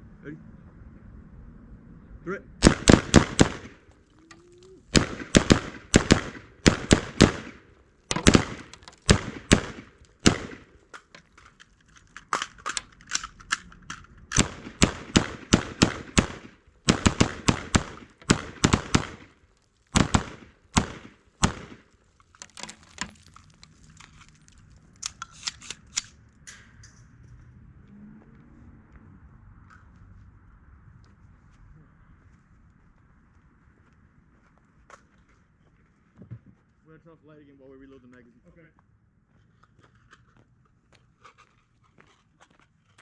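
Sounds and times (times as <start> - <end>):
rifle shots: 2.6 - 3.9, 4.9 - 10.8, 14.3 - 21.9.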